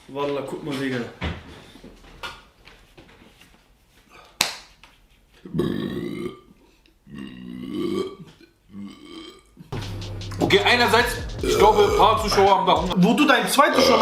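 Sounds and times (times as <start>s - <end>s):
loud burps: 5.5s - 9.7s, 13.6s - 14.0s.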